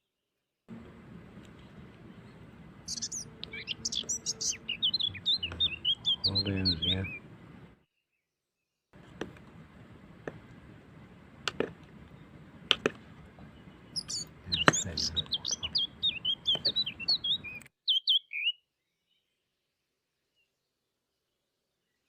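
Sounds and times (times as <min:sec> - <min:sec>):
bird chirping: 0:00.7 - 0:08.2, 0:11.2 - 0:19.4.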